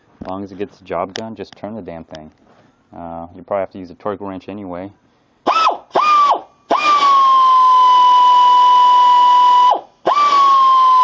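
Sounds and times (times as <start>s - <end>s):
air ratchet whine: 5.5s - 11.0s.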